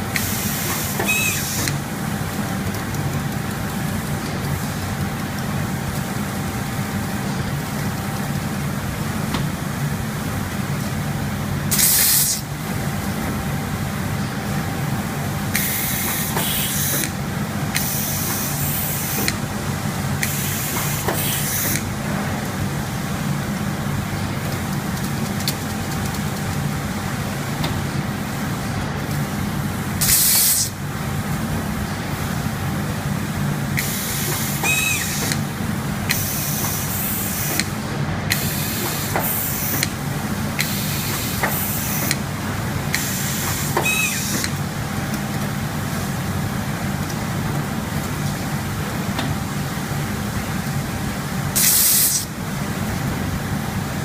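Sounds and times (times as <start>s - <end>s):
machine humming: 0.0s - 54.0s
air hissing: 0.1s - 1.8s, 11.7s - 12.5s, 15.5s - 17.2s, 17.8s - 19.4s, 20.2s - 21.9s, 29.7s - 30.8s, 33.8s - 35.4s, 36.1s - 40.0s, 40.6s - 42.2s, 42.9s - 44.6s, 51.5s - 52.3s.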